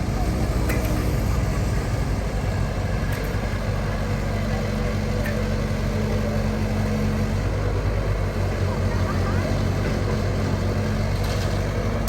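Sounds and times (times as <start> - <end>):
diesel engine running at low revs: 0.0 - 12.0.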